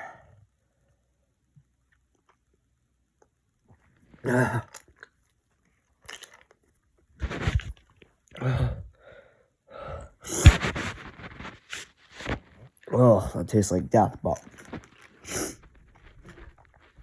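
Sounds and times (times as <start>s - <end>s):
man coughing and gagging: 4.2s - 4.8s.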